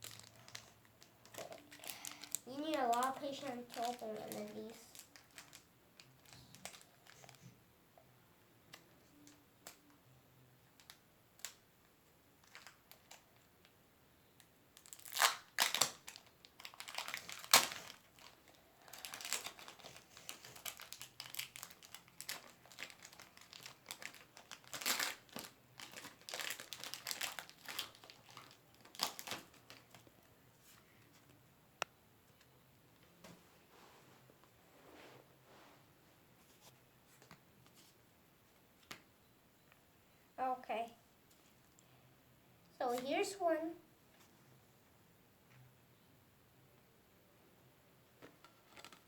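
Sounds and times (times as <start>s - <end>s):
foil wrapper crackling and tearing: 0.0s - 7.4s, 14.8s - 30.0s.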